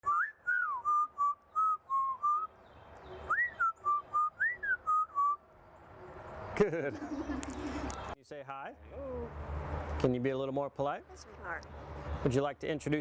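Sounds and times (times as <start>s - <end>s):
parrot whistling a tune: 0.0s - 2.5s, 3.3s - 5.4s.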